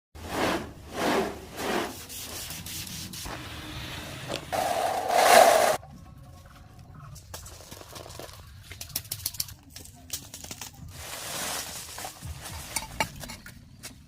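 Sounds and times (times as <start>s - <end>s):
hand scraping and rubbing: 0.2s - 3.3s, 4.6s - 5.8s.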